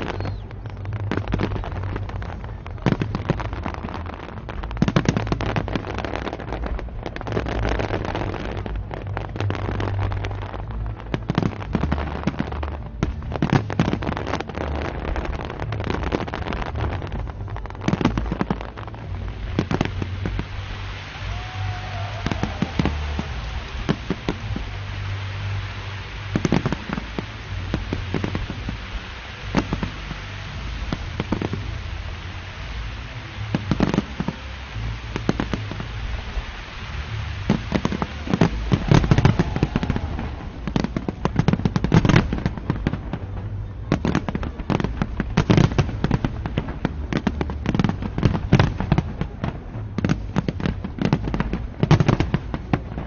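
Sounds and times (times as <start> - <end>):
fireworks bangs and crackles: 0.0 - 53.0
crowd voices reacting: 20.4 - 27.4, 36.4 - 41.9.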